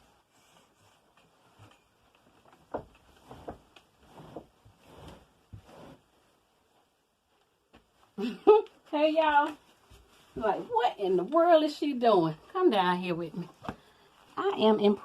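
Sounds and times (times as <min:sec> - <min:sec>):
short rustles: 0:00.0 - 0:11.6.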